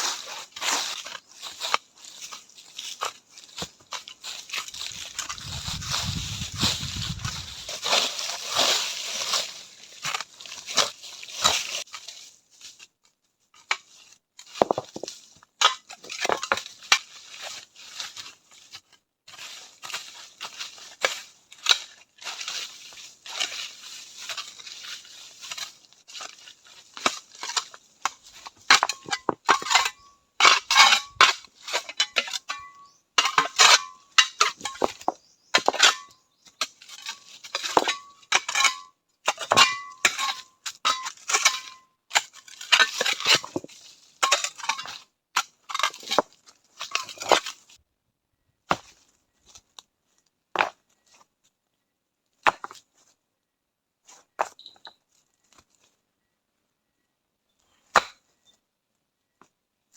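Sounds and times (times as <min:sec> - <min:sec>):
crunching and scraping: 0:00.0 - 0:47.8.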